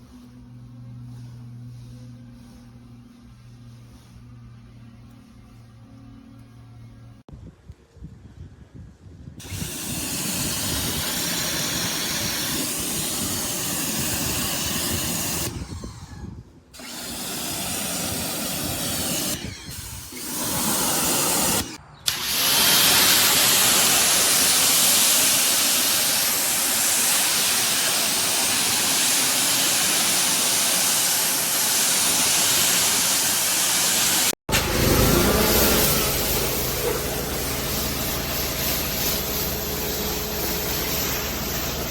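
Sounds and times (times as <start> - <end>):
pressure washer spraying water: 9.4 - 15.7, 16.8 - 41.9.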